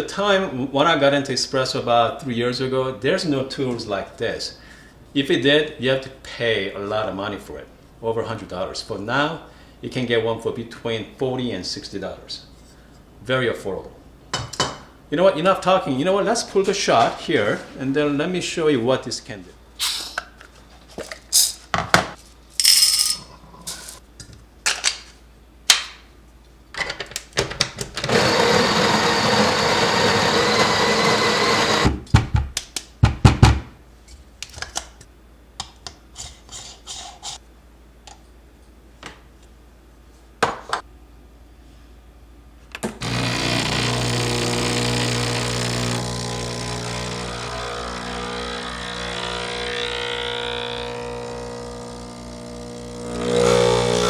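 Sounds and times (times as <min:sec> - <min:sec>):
coffee grinder running: 0:28.1 - 0:31.9, 0:43.0 - 0:54.0
espresso pump humming: 0:28.2 - 0:31.8, 0:50.7 - 0:54.0.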